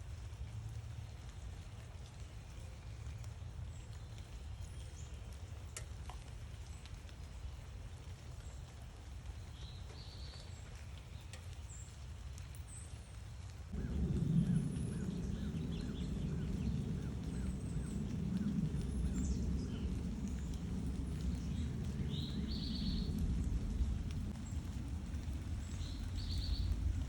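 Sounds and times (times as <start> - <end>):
low background rumble: 13.7 - 27.0
faint bird chirps: 13.8 - 24.6.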